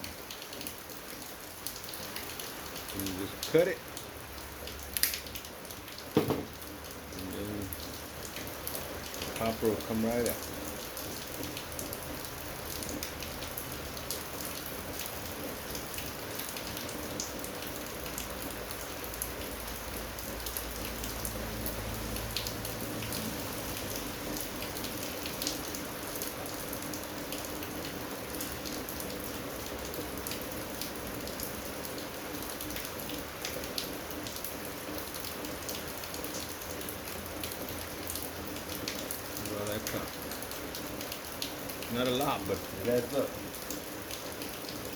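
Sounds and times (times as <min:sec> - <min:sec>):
steady rain-like hiss: 0:00.0 - 0:44.9
small clicks and taps: 0:05.0 - 0:05.3.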